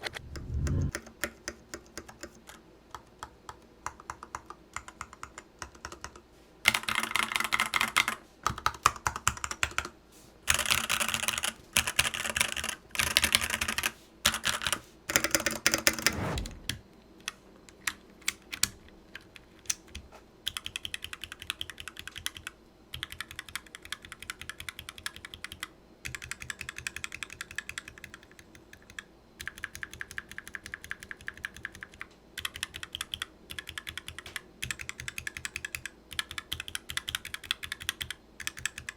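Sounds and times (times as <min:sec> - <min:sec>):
falling tone: 0:00.0 - 0:00.9, 0:16.0 - 0:16.8
fast typing on mechanical keyboard: 0:00.9 - 0:09.9, 0:10.5 - 0:16.1, 0:18.2 - 0:38.9.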